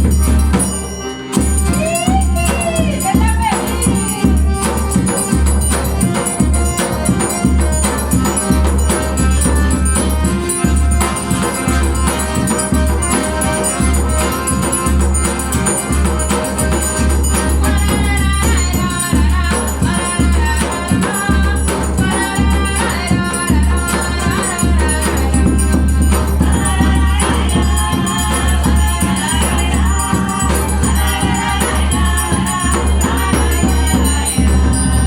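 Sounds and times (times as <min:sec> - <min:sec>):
accordion melody: 0:00.0 - 0:35.0
bass drum beat: 0:34.0 - 0:35.0.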